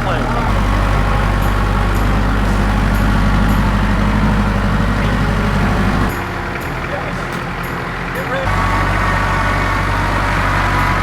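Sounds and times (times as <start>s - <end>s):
vehicle engine droning: 0.0s - 11.0s.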